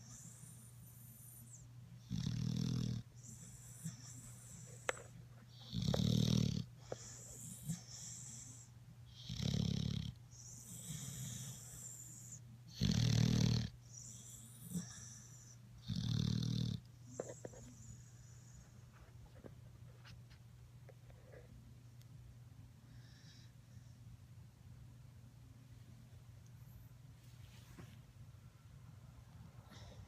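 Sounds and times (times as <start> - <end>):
deep loud snoring: 2.0 - 4.1, 5.6 - 8.6, 9.2 - 12.0, 12.7 - 15.2, 15.8 - 16.8.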